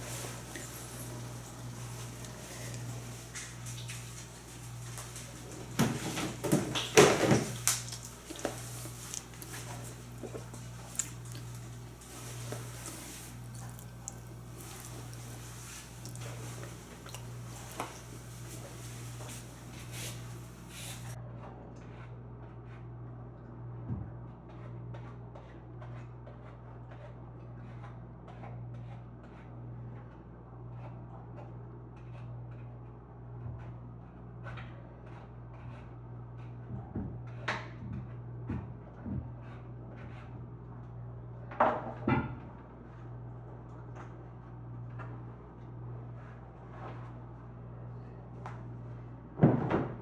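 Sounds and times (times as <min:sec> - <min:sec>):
steady low hum: 0:00.0 - 0:21.2.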